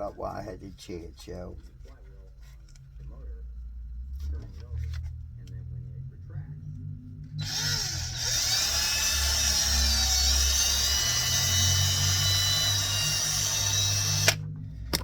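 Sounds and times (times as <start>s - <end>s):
electric power tool whining: 7.4s - 14.5s.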